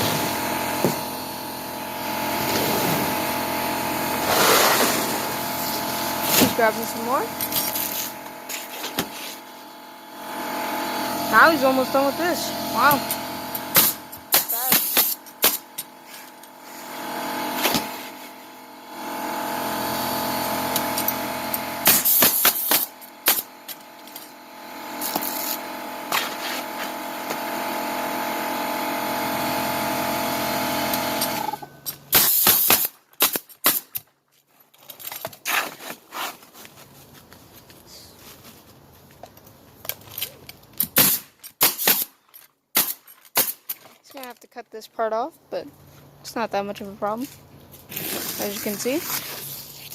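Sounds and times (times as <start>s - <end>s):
steady machine hum: 0.0s - 32.1s
nail gun firing: 13.6s - 15.8s, 21.8s - 23.5s, 30.9s - 34.0s, 40.8s - 43.7s.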